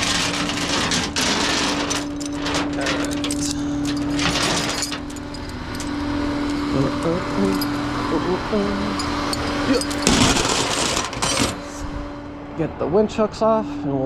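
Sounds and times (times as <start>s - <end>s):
truck engine humming: 0.0s - 10.5s
metal hooks and chains clanking: 0.0s - 11.8s.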